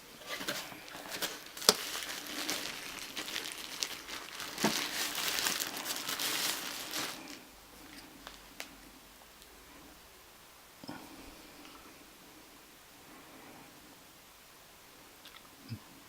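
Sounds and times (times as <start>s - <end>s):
packaging crinkling and rustling: 0.0s - 8.8s.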